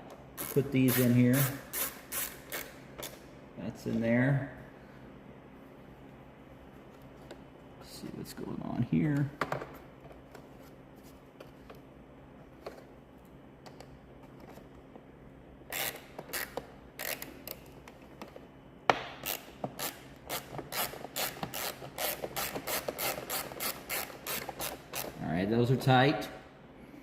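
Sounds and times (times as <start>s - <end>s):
hand ratchet clicking: 0.4s - 3.2s, 15.7s - 17.7s, 19.2s - 25.2s.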